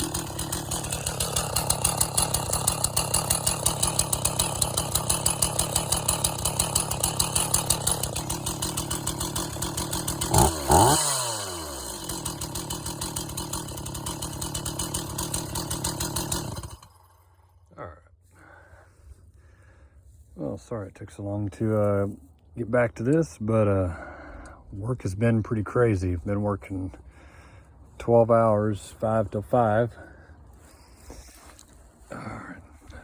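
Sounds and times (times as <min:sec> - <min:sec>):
chainsaw throttle blips: 0:00.0 - 0:17.5
chainsaw idling: 0:00.0 - 0:18.6.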